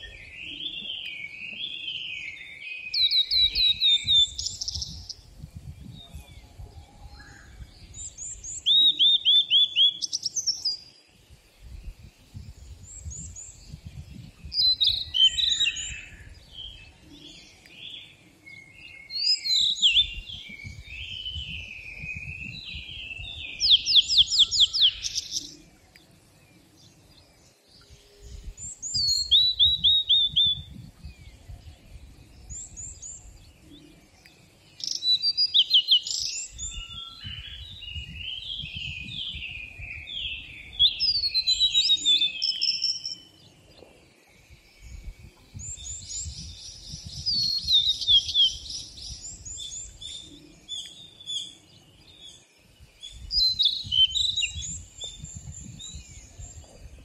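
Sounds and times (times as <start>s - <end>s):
songbirds singing and calling: 0.0s - 57.0s.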